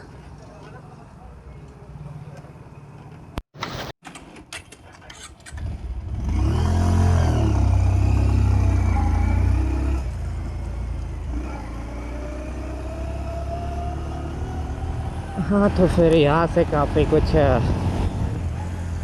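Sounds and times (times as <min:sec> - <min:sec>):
motorcycle engine revving: 0:05.1 - 0:19.0.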